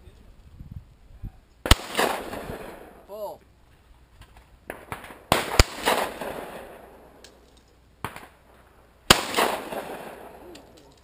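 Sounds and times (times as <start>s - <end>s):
shotgun shots echoing: 1.6s - 3.0s, 4.7s - 7.4s, 8.0s - 10.8s.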